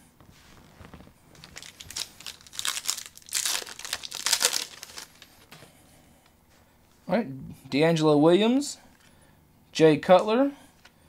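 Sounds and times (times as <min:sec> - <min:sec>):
plastic wrapper crinkling and tearing: 0:00.6 - 0:05.5.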